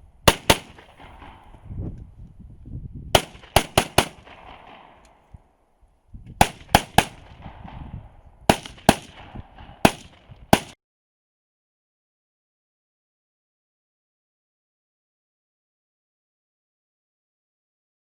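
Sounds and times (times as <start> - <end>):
rapid gunshots: 0.3 - 1.5, 3.2 - 5.0, 6.4 - 7.9, 8.5 - 10.8.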